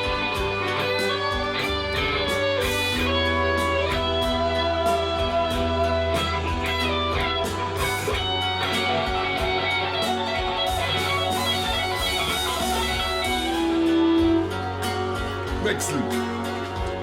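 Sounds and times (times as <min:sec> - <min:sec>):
backing track with bass and drums: 0:00.0 - 0:17.0
electric guitar lead lines: 0:00.0 - 0:17.0.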